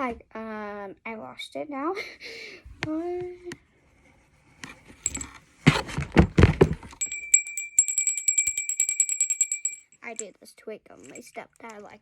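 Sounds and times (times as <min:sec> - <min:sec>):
small metal bell ringing: 0:05.0 - 0:05.3, 0:07.0 - 0:10.3, 0:11.0 - 0:11.8.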